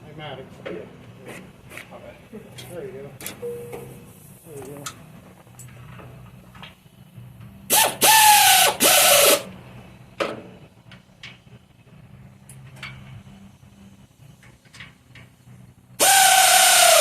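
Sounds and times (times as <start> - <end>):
pneumatic air ratchet whine: 7.7 - 9.5, 16.0 - 17.0.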